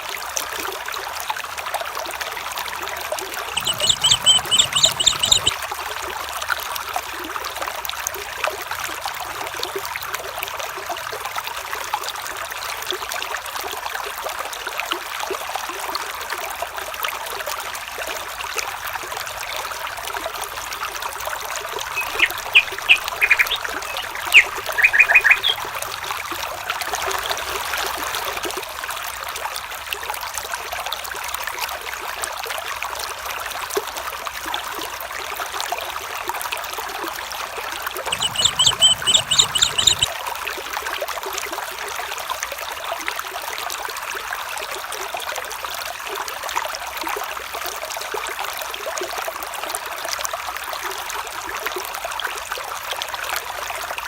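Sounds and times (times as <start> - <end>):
stream trickling: 0.0 - 54.0
bird chirps: 3.5 - 5.6, 21.8 - 25.8, 38.1 - 40.1.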